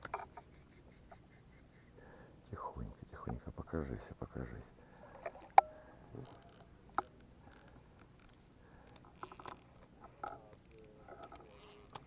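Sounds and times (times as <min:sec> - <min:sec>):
fishing tackle clicks and scrapes: 0:00.0 - 0:01.0, 0:06.2 - 0:12.0
fishing reel ticking: 0:06.2 - 0:12.0.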